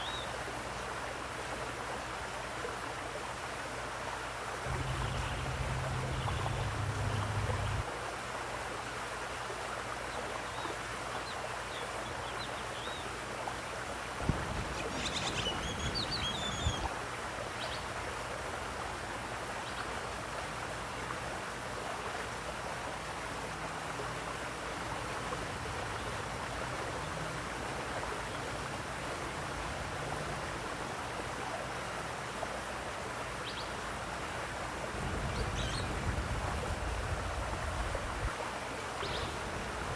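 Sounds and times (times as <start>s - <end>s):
running water rushing: 0.0s - 39.9s
low rumble: 4.7s - 7.8s.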